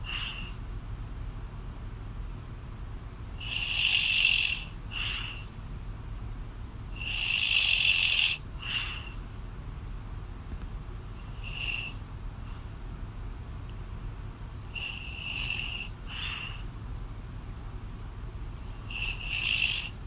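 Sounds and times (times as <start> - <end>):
woman snoring over a phone: 3.4 - 5.4, 7.0 - 9.1, 11.4 - 12.0, 14.8 - 16.6, 18.9 - 20.0.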